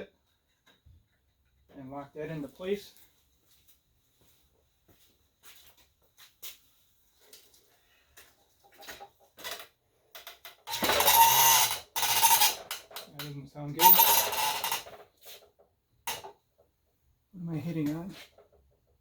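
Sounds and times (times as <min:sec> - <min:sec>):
metal stand grinding scrape: 0:10.7 - 0:12.8, 0:13.8 - 0:15.0.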